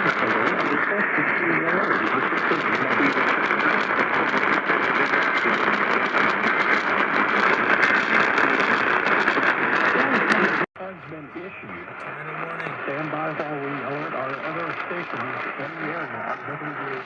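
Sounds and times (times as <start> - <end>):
faint voice: 0.0 - 3.8, 9.9 - 17.0
radio static hiss: 0.0 - 17.0.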